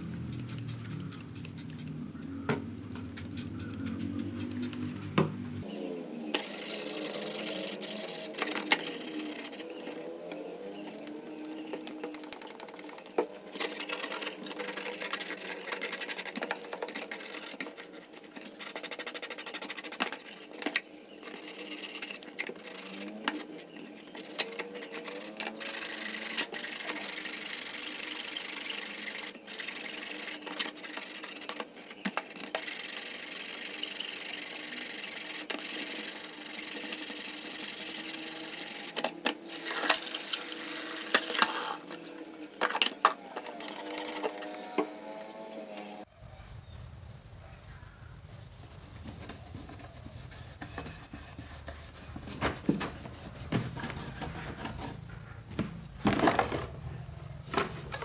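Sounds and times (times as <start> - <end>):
small motor running: 2.8 - 17.8, 18.4 - 46.0
abrasive sanding and rubbing: 6.4 - 42.7, 47.6 - 55.4.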